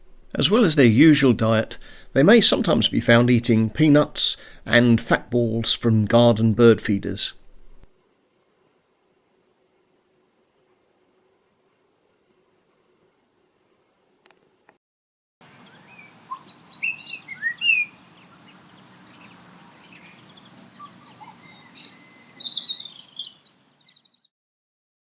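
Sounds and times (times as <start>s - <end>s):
outdoor background noise: 0.0s - 14.8s, 15.4s - 24.2s
bird chirps and whistles: 15.5s - 18.2s, 20.8s - 24.3s.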